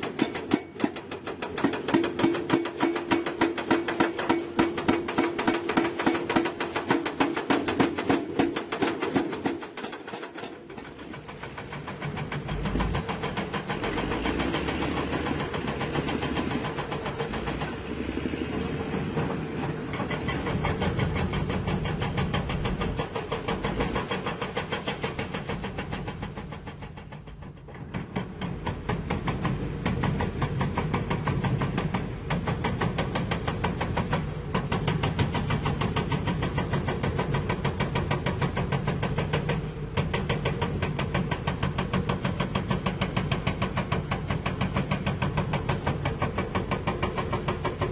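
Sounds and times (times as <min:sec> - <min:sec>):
diesel engine pulsing: 0:10.5 - 0:47.9.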